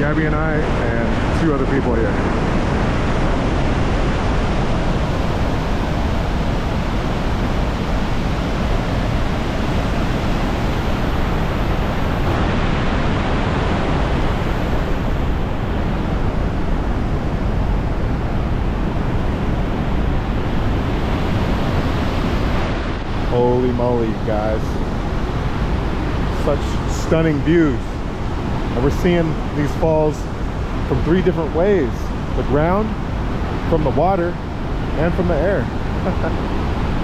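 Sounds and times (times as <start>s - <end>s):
waterfall rushing: 0.6s - 16.3s.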